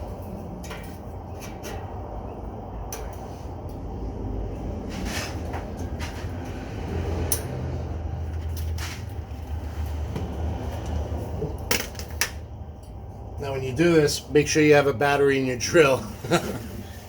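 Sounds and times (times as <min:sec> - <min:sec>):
steady low rumble: 0:00.0 - 0:17.0
metal parts and tools knocking: 0:11.5 - 0:12.4.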